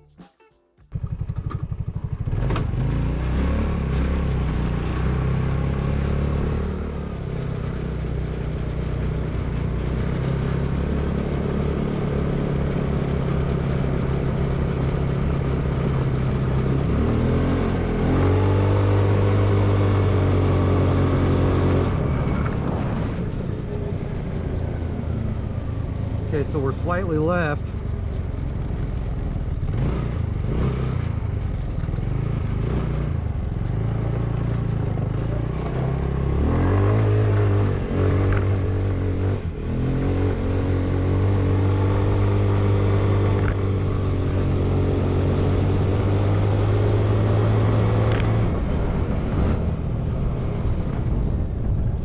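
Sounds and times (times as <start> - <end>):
go-kart engine running: 0.9 - 52.0.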